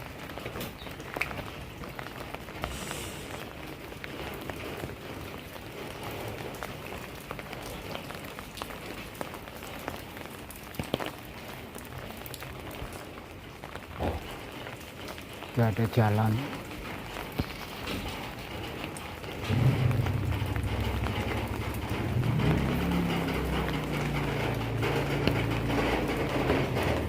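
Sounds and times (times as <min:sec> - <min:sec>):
rain falling: 0:00.0 - 0:27.0
drips ticking: 0:14.4 - 0:27.0
sharp knocks: 0:19.4 - 0:27.0.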